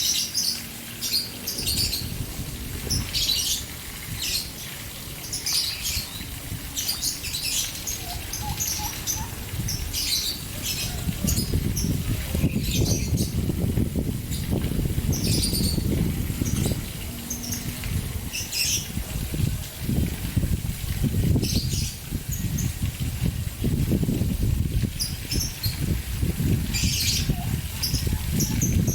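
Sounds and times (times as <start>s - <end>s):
birds chirping: 0.0s - 13.5s, 14.3s - 19.2s
fountain water splashing: 0.0s - 28.9s.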